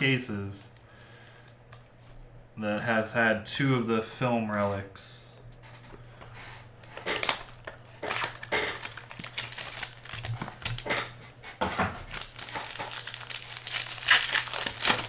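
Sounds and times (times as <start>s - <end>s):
wrapper crinkling and tearing: 6.8s - 11.2s, 12.0s - 15.0s.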